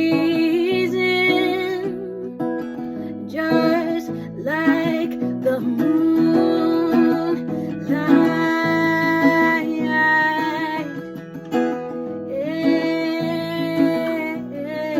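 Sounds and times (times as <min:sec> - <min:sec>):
acoustic guitar playing: 0:00.0 - 0:14.9
person singing long notes: 0:03.3 - 0:11.0, 0:12.3 - 0:14.9.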